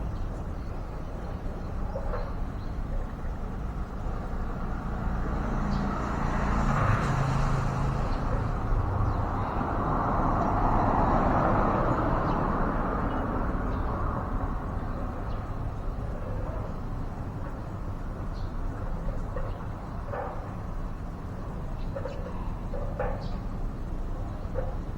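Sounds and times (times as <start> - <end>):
tyre and road noise: 2.0 - 24.9
vehicle engine hum: 3.8 - 15.4.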